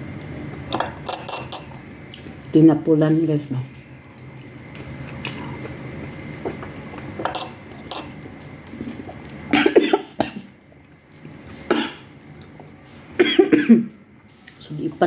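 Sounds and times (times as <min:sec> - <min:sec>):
cutlery clinking on a plate: 0:07.0 - 0:08.2.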